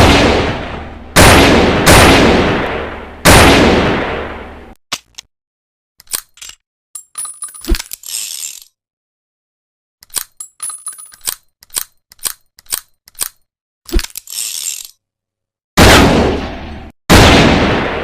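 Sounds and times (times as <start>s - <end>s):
revolver cylinder clicks and clinks: 6.0s - 8.6s, 10.0s - 13.2s.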